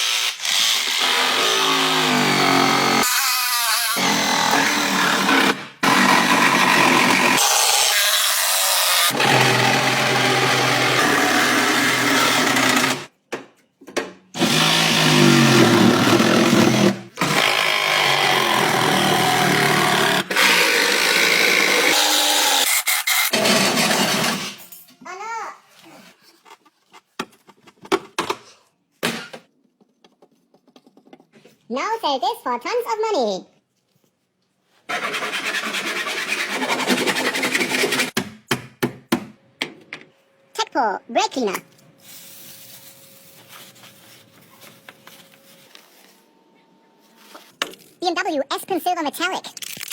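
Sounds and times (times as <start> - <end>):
small power tool running: 4.0 - 13.1.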